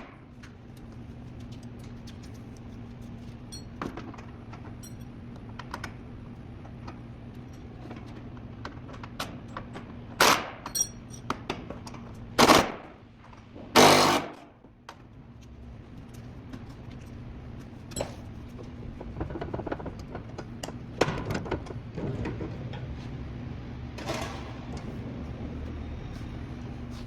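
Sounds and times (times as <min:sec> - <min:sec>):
tools clinking: 0:03.5 - 0:03.9, 0:04.7 - 0:05.2, 0:10.6 - 0:11.4.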